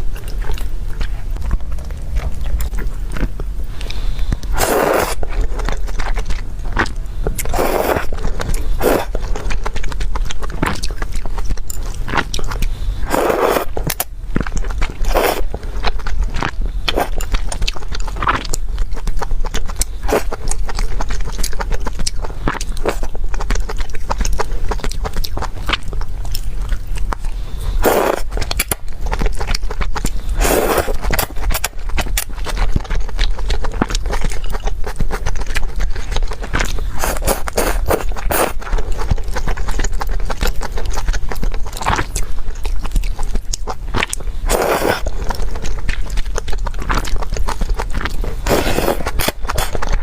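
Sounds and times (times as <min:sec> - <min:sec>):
chewing with mouth clicks: 0:00.0 - 0:50.0
loud crunchy bites: 0:46.4 - 0:50.0.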